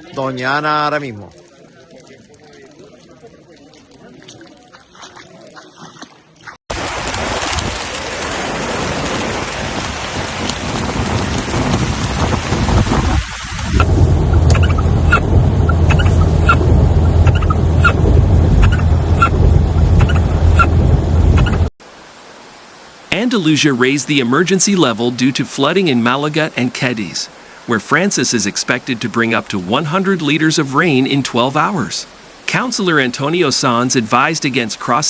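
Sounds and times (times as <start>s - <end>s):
heavy rain rushing: 6.7s - 35.0s
deep steady rumble: 10.5s - 21.7s.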